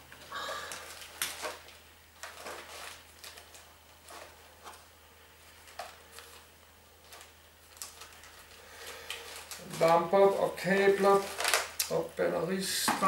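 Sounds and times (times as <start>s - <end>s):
rummaging through box of cables: 0.7s - 4.8s, 7.0s - 11.7s.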